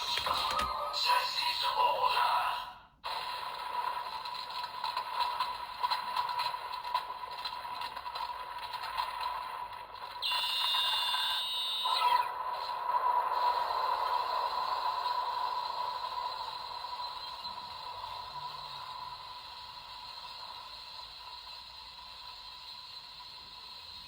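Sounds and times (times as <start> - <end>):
plastic toy clicking and scraping: 0.0 - 0.9, 3.3 - 10.8
toy electronic tone: 10.2 - 12.7.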